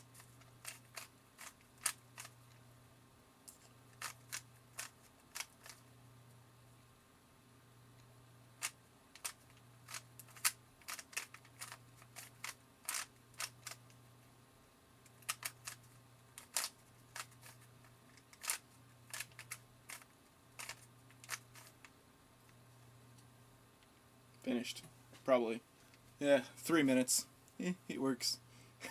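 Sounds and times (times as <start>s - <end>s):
puzzle cube layers clicking: 0.2s - 2.4s, 8.6s - 13.9s, 15.1s - 15.8s, 16.4s - 21.8s.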